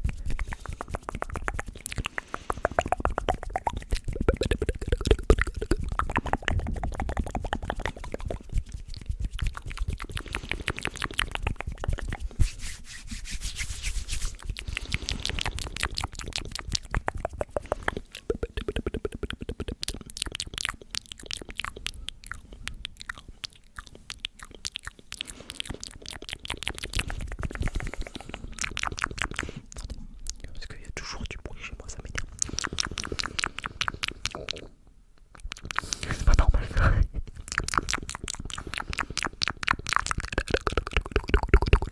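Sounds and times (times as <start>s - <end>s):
lip and tongue clicks: 0.0s - 41.9s.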